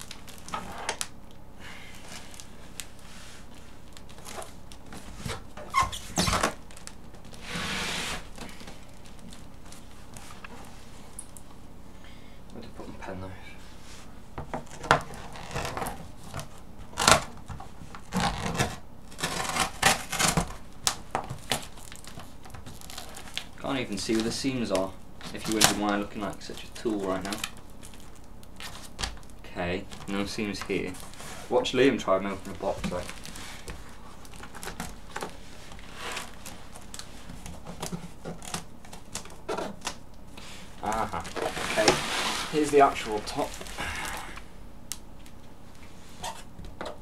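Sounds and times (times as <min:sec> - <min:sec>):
hands scraping cardboard box: 0:07.4 - 0:08.3, 0:40.4 - 0:43.8
hands handling cardboard box: 0:32.3 - 0:44.1.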